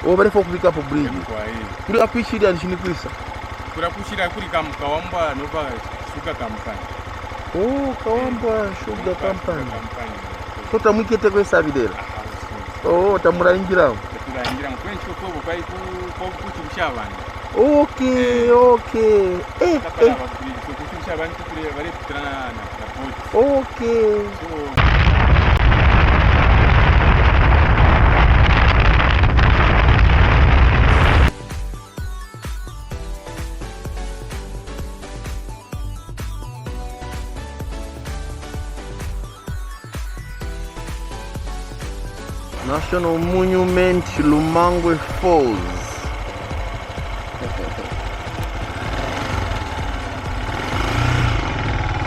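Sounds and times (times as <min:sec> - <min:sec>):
motorbike engine: 0:00.0 - 0:31.4, 0:40.2 - 0:52.0
wind rumble on microphone: 0:24.8 - 0:31.3.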